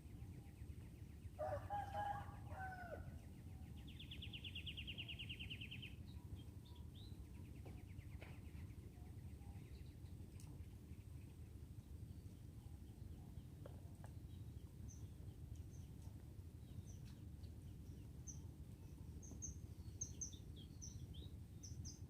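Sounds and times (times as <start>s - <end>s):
low rumble of outdoor noise: 0.0s - 22.0s
rooster crowing: 1.4s - 3.1s.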